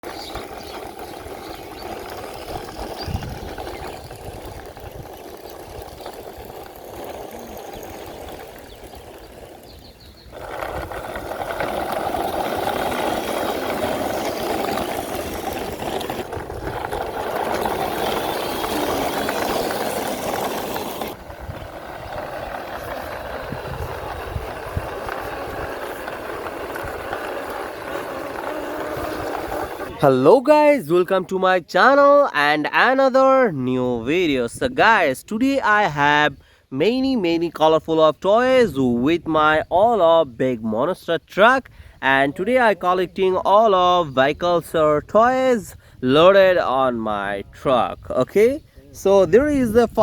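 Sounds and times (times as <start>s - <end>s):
small motor running: 0.0s - 30.0s.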